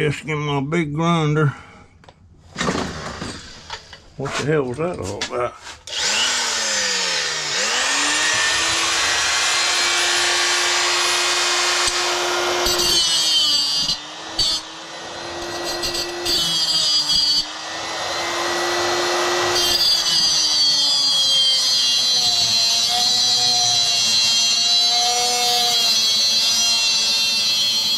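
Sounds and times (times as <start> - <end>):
grinder grinding metal: 2.7 - 27.9
electric grinder running: 5.9 - 27.9.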